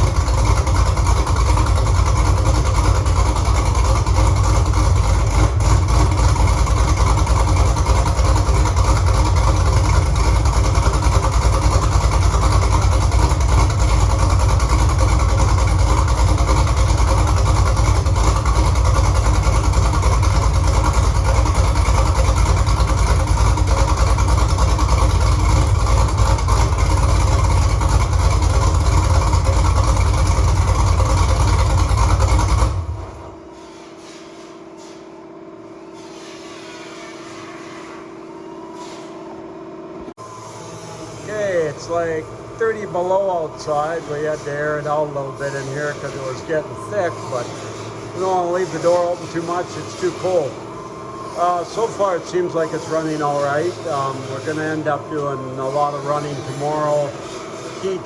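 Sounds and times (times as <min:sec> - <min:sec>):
car engine idling: 0:00.0 - 0:33.6, 0:41.2 - 0:58.0.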